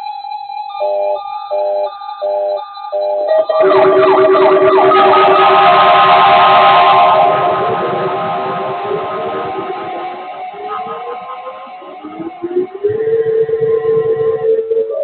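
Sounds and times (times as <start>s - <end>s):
overlapping alarm tones: 3.2s - 14.4s.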